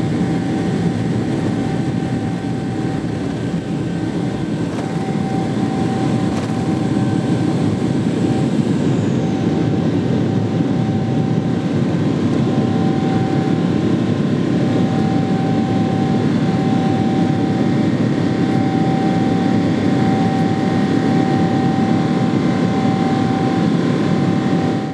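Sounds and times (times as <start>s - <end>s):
jet engine and airflow roar: 0.0s - 24.9s.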